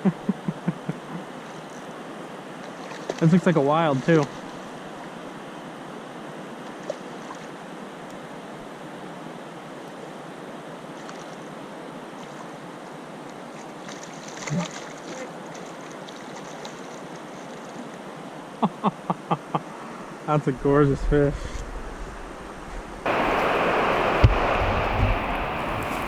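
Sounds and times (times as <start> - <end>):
river rushing over rapids: 23.0 - 26.0
knock or splash: 24.0 - 26.0.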